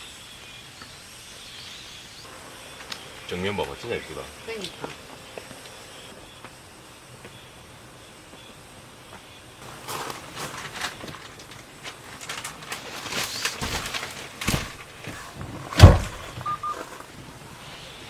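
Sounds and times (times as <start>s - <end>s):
heavy thump: 13.6s - 16.5s.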